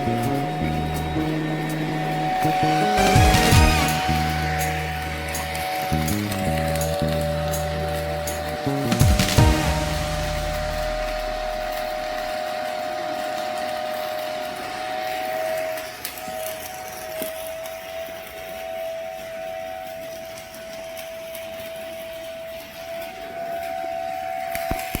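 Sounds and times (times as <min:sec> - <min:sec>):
two-tone machine whine: 0:00.0 - 0:25.0
small crackles: 0:12.6 - 0:25.0.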